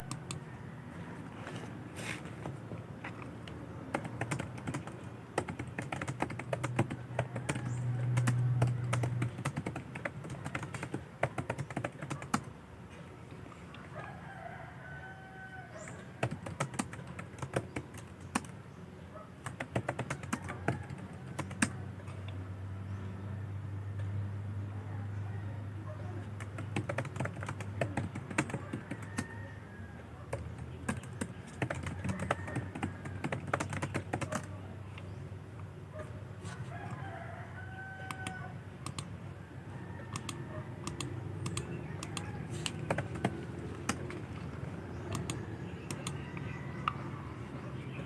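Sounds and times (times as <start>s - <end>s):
keyboard key clicks: 40.2s - 44.4s, 45.1s - 46.2s.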